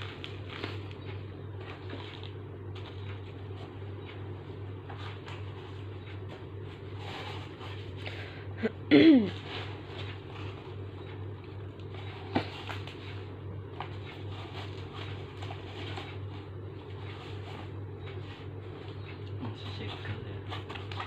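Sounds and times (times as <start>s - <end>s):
packaging rustling and tapping: 0.0s - 4.2s, 9.4s - 21.0s
steady low hum: 0.0s - 21.0s.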